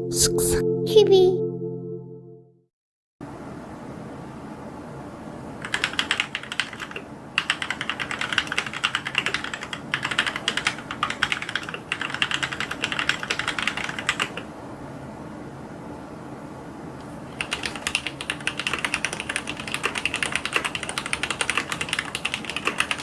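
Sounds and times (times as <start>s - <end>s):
fast keyboard typing: 5.6s - 14.5s, 17.3s - 23.0s.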